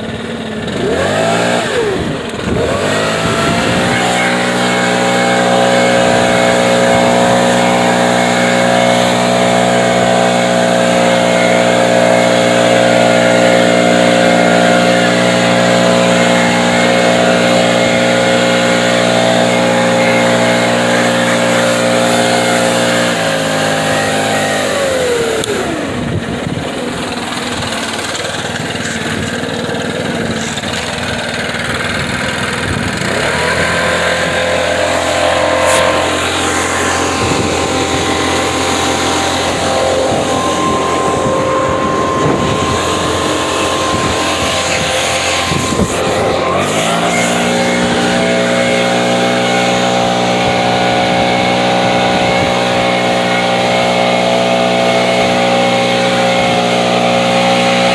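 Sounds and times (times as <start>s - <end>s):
leaf blower engine running: 0.0s - 57.9s.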